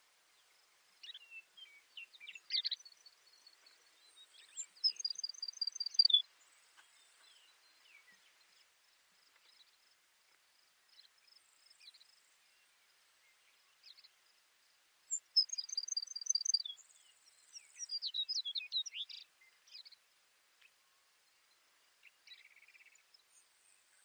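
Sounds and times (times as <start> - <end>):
sparrow singing: 0.4 - 8.5, 15.1 - 20.0.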